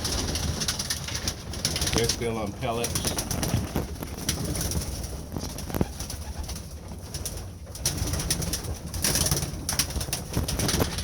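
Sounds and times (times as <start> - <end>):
pigeons cooing: 0.0 - 9.6.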